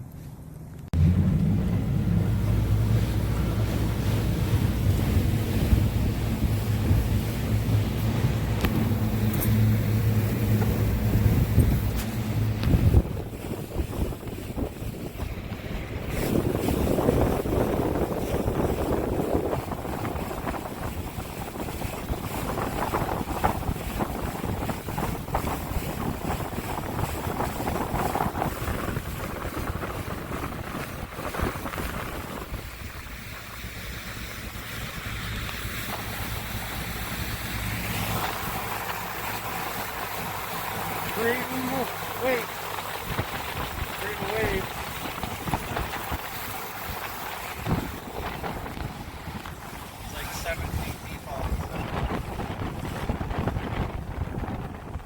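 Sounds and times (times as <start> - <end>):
boat motor running: 0.0 - 55.0
wind noise on microphone: 0.9 - 55.0.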